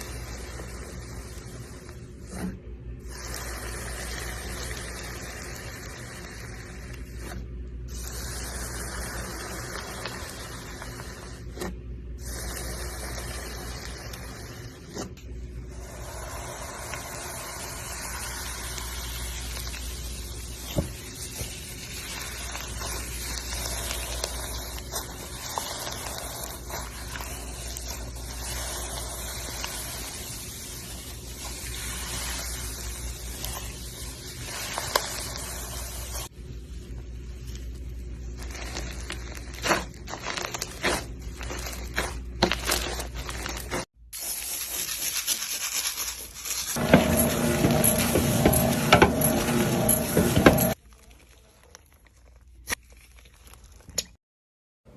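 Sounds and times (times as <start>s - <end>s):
slime squishing and crackling: 15.8s - 46.8s, 50.8s - 54.2s.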